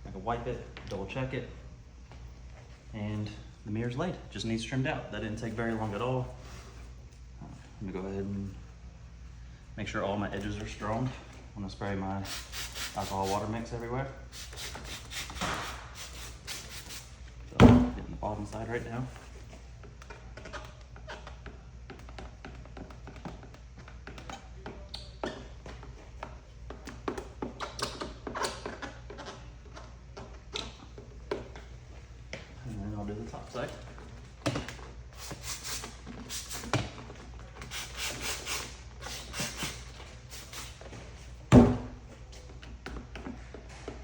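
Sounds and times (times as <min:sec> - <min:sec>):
spray bottle hissing: 0:12.3 - 0:13.4, 0:14.3 - 0:17.1, 0:35.2 - 0:36.7, 0:37.6 - 0:40.8
loud thud: 0:17.6 - 0:18.0.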